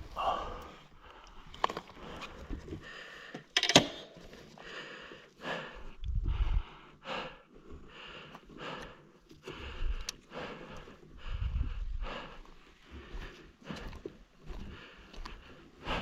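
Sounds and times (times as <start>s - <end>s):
person breathing hard: 0.0s - 3.6s, 4.2s - 16.0s
wind rumble on microphone: 5.9s - 6.8s, 11.2s - 12.2s.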